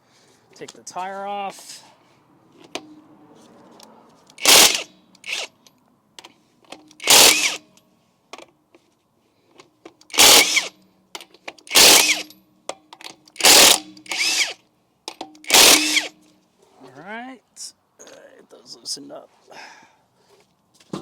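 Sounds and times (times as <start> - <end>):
impact wrench whining: 4.4 - 5.6, 7.0 - 7.7, 10.1 - 10.8, 11.6 - 12.4, 13.4 - 14.6, 15.4 - 16.2.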